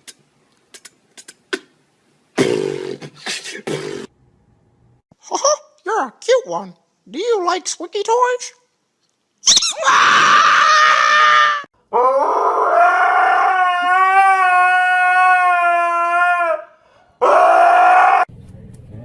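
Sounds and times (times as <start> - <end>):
dog howling: 9.8 - 18.3.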